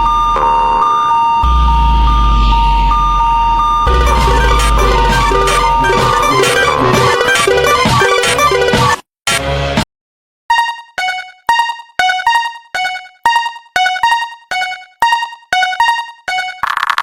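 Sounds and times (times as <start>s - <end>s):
buzzy synthesized tone: 0.0s - 8.9s.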